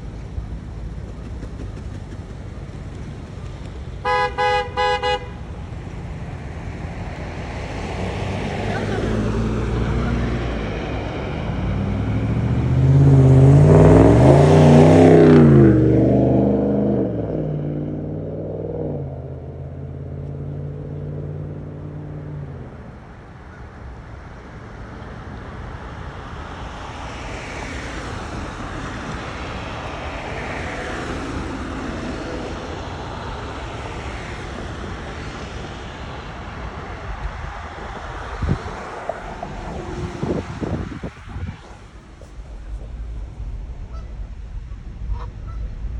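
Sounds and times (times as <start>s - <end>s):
steady road noise: 0.0s - 45.9s
car engine revving past: 6.4s - 23.0s, 26.4s - 45.9s.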